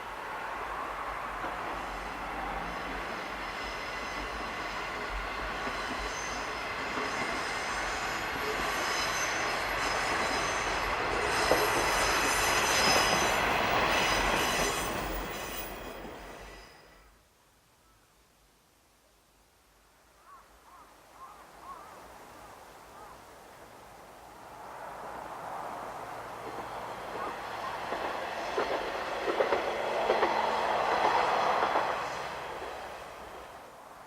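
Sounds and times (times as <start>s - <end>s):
railcar running on track: 0.0s - 17.2s, 24.4s - 34.0s.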